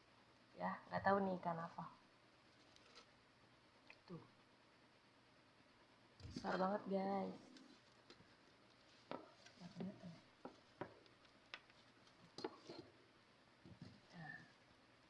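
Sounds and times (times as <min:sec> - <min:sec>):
faint clicks and taps: 0:07.5 - 0:12.9.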